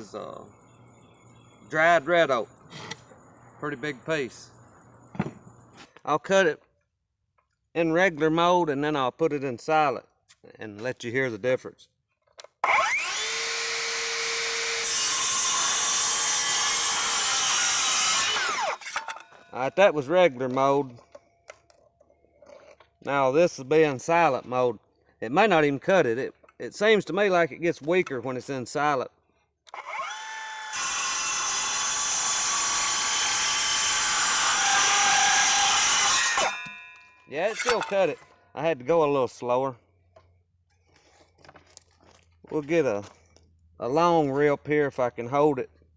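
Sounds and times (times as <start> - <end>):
saw cutting through wood: 12.6 - 19.5, 29.7 - 36.8, 37.4 - 38.2
circular saw whine: 12.6 - 19.8, 29.8 - 38.4.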